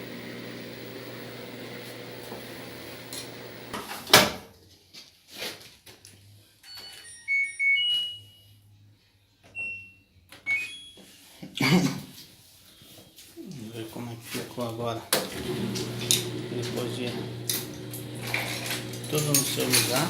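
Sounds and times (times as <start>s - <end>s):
washer-dryer humming: 0.0s - 3.9s, 15.2s - 20.0s.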